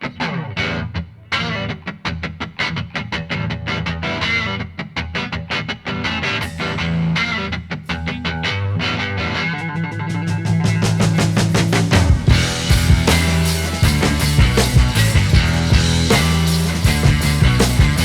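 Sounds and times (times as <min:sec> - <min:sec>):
rock music with loud guitar: 0:00.0 - 0:18.0
strong bass: 0:10.4 - 0:18.0.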